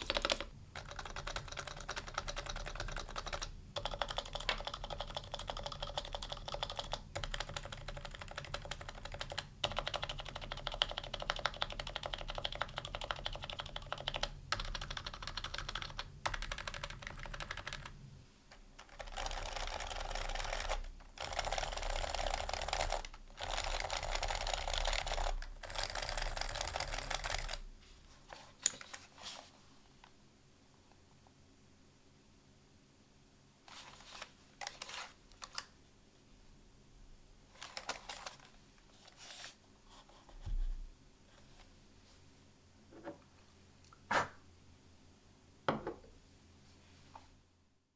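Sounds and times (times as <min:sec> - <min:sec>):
keyboard typing: 0:00.0 - 0:18.0, 0:18.8 - 0:27.6.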